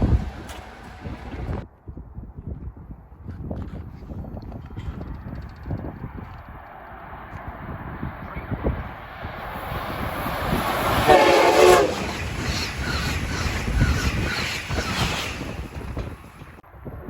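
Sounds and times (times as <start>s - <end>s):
passenger train running past: 0.0s - 1.6s, 6.6s - 17.0s
wheels clicking over rail joints: 0.0s - 1.6s, 9.6s - 16.6s
train horn blast: 10.9s - 12.2s.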